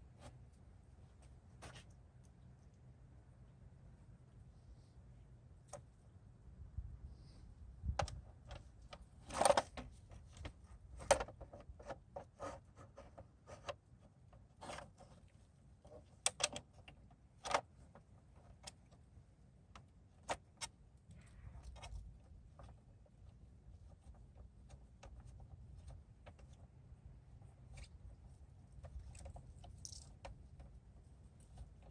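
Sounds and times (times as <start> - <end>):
small screws clicking and tapping: 28.9 - 30.8.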